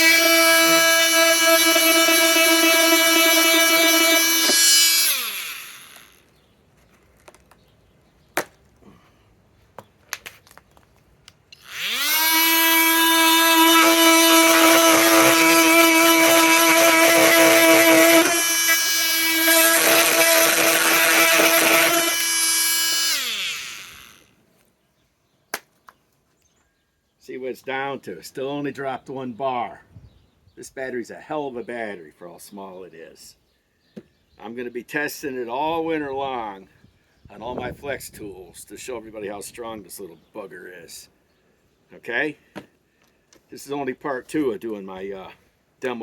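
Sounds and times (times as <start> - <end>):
oscillating multi-tool running: 0.0 - 6.2, 11.6 - 24.3
blade cutting: 0.0 - 6.3, 11.6 - 24.3.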